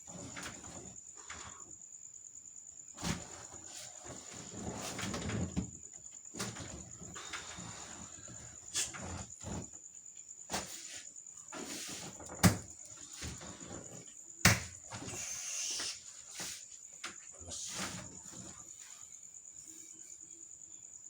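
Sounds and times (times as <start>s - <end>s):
sharp knocks: 14.4s - 14.8s.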